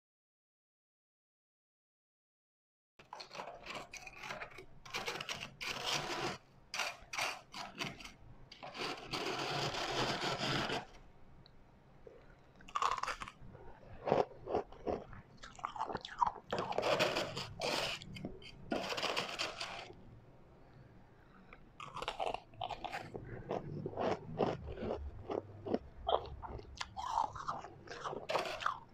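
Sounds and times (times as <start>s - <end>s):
ice crunching while chewed: 3.0s - 10.9s, 12.1s - 20.0s, 21.8s - 28.9s.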